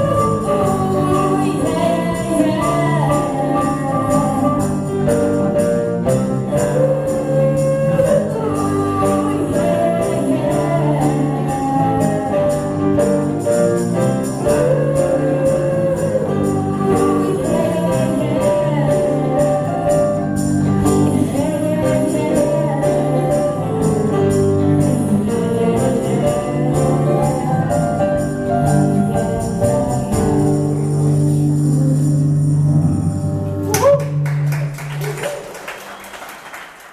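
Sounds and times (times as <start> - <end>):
person singing: 0.0 - 5.8, 6.4 - 34.2
acoustic band playing: 0.0 - 35.2.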